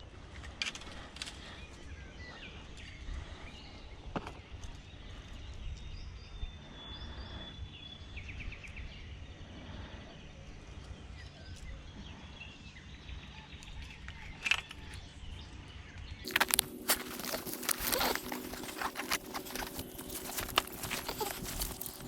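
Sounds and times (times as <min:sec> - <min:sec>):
faint bird calls: 0:00.3 - 0:22.0
rustling and crinkling handling noise: 0:16.2 - 0:22.0.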